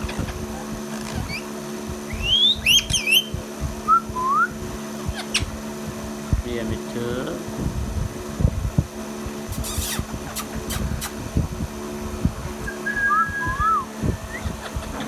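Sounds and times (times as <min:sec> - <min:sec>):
steady hum: 0:00.0 - 0:15.0
short hissing bursts: 0:09.5 - 0:11.2
short whistles: 0:12.7 - 0:14.4.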